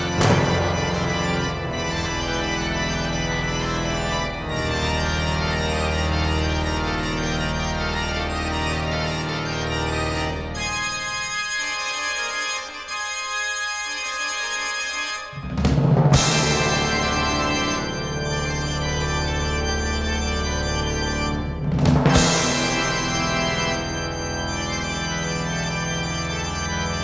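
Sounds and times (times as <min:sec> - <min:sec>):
deep organ bass notes: 0:00.0 - 0:11.4, 0:15.3 - 0:27.0
organ toccata chords: 0:00.0 - 0:27.0.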